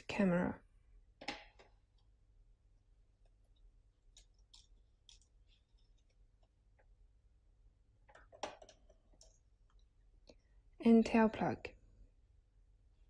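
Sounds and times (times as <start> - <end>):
faint clicks and ticks: 3.2 - 7.0.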